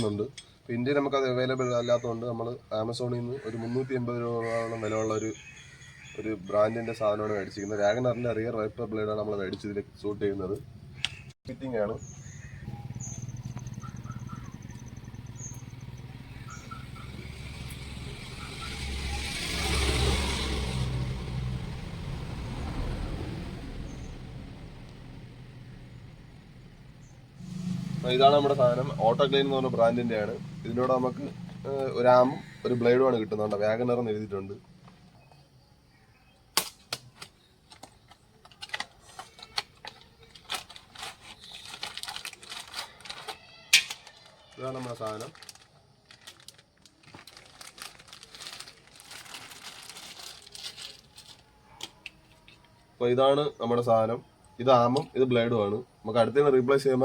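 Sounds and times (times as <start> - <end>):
vehicle engine humming: 11.9 - 35.3.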